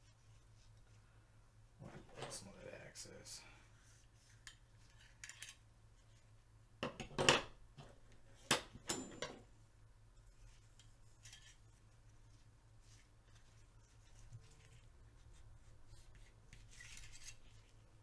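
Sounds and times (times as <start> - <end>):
metal parts clinking and knocking: 8.5 - 9.4.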